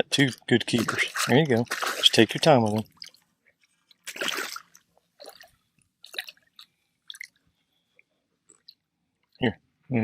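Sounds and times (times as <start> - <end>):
water splashing: 0.1 - 3.3, 3.9 - 7.4
water dripping: 0.1 - 9.4
wet squishing: 0.2 - 7.5.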